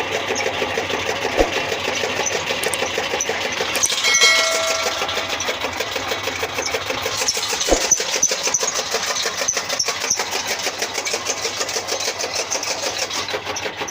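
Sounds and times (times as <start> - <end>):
chaff cutter rhythmic clatter: 1.0 - 8.1.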